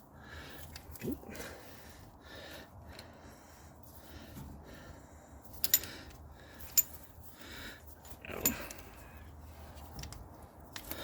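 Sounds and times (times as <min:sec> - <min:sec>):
metal tools clinking: 0:05.5 - 0:07.1, 0:08.0 - 0:09.0.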